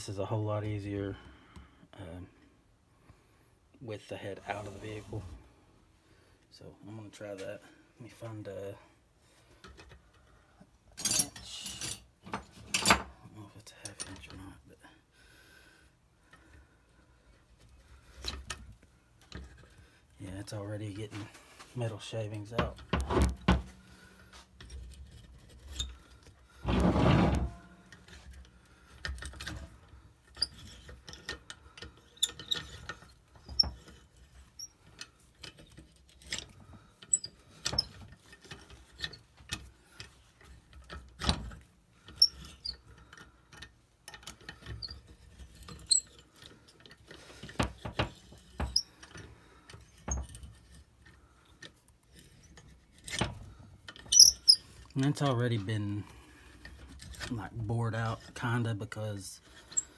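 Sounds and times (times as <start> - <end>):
metal clicks and scrapes: 59.4 - 59.9.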